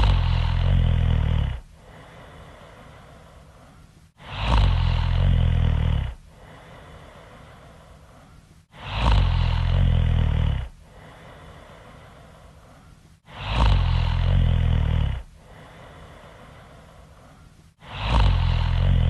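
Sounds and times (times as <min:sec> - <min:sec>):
woman snoring loudly: 0:00.0 - 0:01.7, 0:04.2 - 0:06.6, 0:08.7 - 0:11.3, 0:13.3 - 0:16.2, 0:17.8 - 0:19.0
soft breath: 0:00.0 - 0:19.0.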